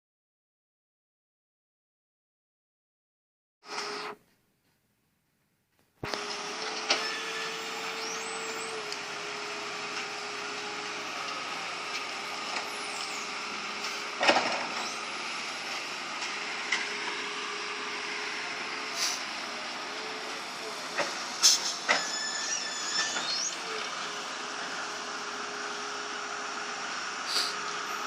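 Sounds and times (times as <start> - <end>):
excavator diesel engine straining: 6.1 - 28.0.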